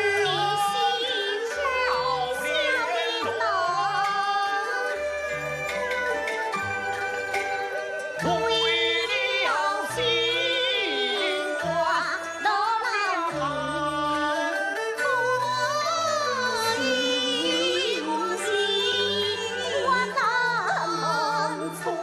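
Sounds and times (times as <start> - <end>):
instrumental accompaniment: 0.0 - 22.0
person singing opera with vibrato: 8.2 - 14.7, 15.3 - 22.0.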